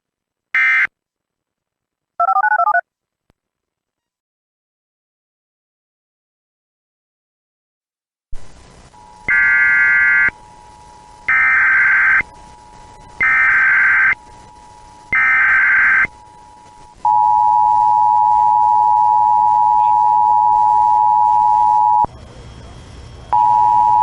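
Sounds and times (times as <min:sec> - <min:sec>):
screeching data bursts: 0:09.2 - 0:10.4, 0:11.3 - 0:17.0
two-tone attention signal: 0:15.1 - 0:22.1, 0:23.3 - 0:24.0.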